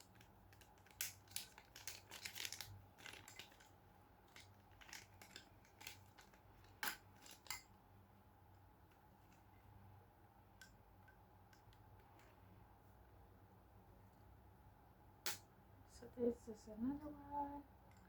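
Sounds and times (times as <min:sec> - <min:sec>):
plastic packaging crinkling and snipping: 0:00.0 - 0:07.7.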